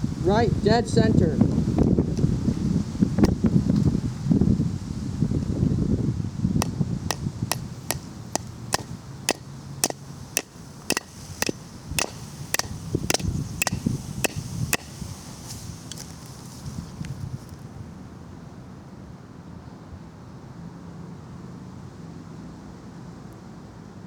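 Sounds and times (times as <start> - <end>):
wind noise: 0.0 - 18.0
hammer striking nail: 7.1 - 15.0.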